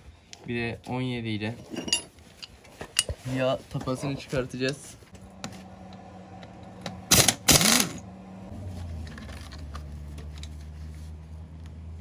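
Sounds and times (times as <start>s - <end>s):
wrench clanking on metal: 1.7s - 3.1s.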